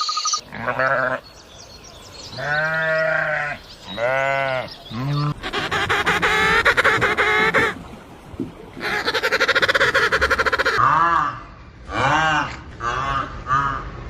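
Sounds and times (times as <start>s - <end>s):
farm animals bleating: 0.5s - 1.3s, 2.4s - 5.4s.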